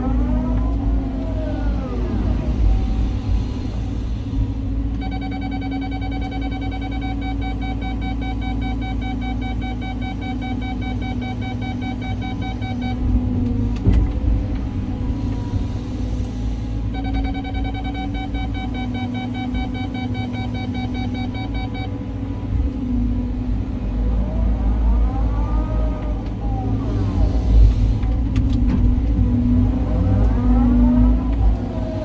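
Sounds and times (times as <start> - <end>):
excavator engine and hydraulics: 0.0 - 32.0
rapid electronic beeping: 5.0 - 13.1, 16.9 - 22.0.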